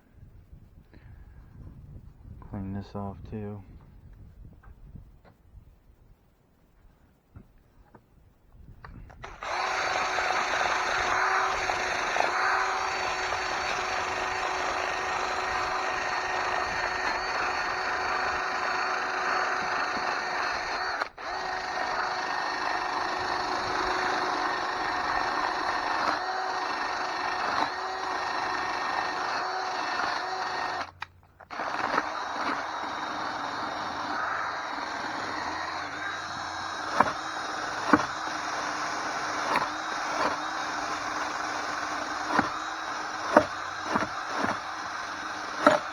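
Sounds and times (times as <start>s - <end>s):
wire wheel brushing metal: 9.2s - 45.9s.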